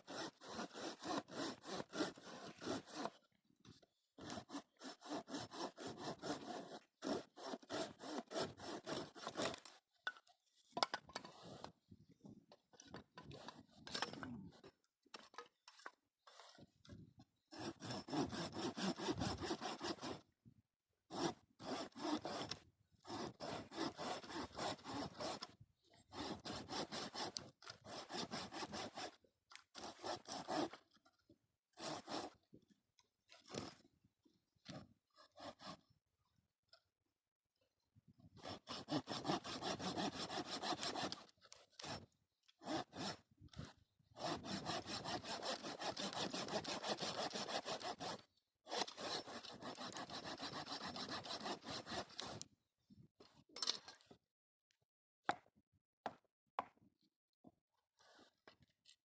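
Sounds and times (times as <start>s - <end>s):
hand saw cutting wood: 0.0s - 3.3s, 4.2s - 11.8s, 12.8s - 16.8s, 17.5s - 20.3s, 21.1s - 31.0s, 31.7s - 32.5s, 33.3s - 33.8s, 34.7s - 36.0s, 38.4s - 52.5s.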